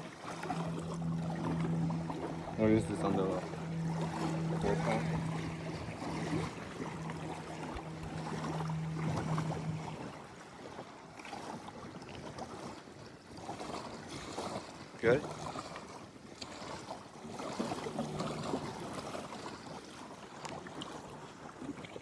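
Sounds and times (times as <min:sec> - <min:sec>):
boat motor humming: 0:00.0 - 0:11.8, 0:14.8 - 0:21.4
water and wind noise: 0:00.0 - 0:22.0.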